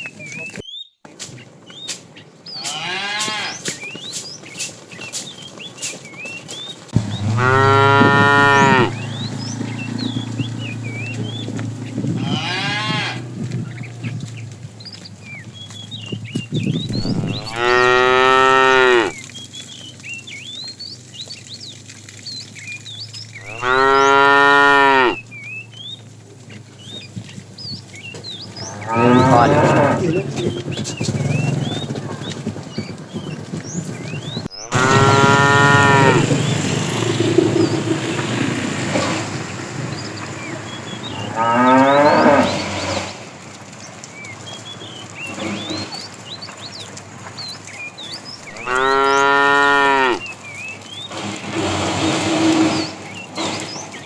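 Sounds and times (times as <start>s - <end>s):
cattle mooing: 2.6s - 3.7s, 7.0s - 14.4s, 16.9s - 19.2s, 23.4s - 25.2s, 28.4s - 32.2s, 34.6s - 39.4s, 40.0s - 43.3s, 48.5s - 50.3s
fainter moos from other cows: 7.2s - 9.2s, 28.6s - 30.5s.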